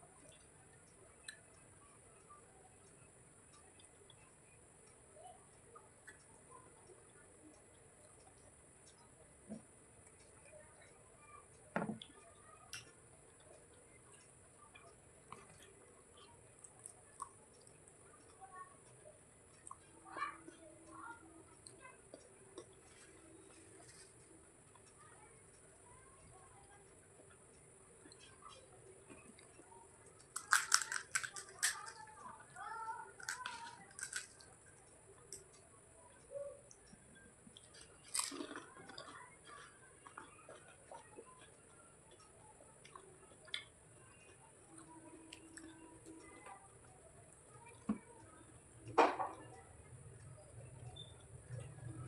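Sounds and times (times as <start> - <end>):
faint steady hiss: 0.0 - 52.0
wet chewing and mouth sounds: 12.0 - 18.4, 21.5 - 25.6, 28.0 - 46.9
crisp food crunching: 30.1 - 32.5, 33.1 - 34.6, 37.5 - 41.5
mouth clicks and smacks: 30.2 - 32.2, 36.7 - 44.4
loud bite: 30.3 - 31.9, 33.2 - 34.4.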